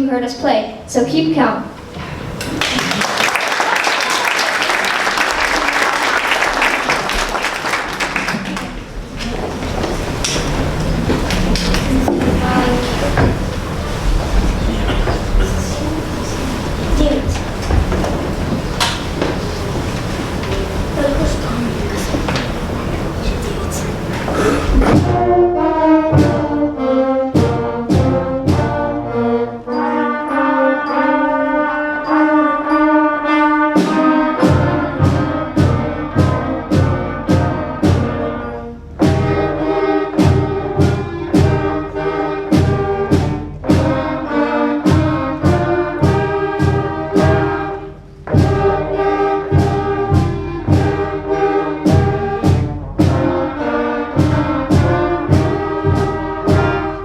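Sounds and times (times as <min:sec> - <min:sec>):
school concert band playing carols: 0:00.8 - 0:57.0
drum hits: 0:09.0 - 0:25.4, 0:33.8 - 0:38.3, 0:39.0 - 0:39.6, 0:40.2 - 0:41.9, 0:42.5 - 0:44.2, 0:44.8 - 0:53.5, 0:54.2 - 0:57.0.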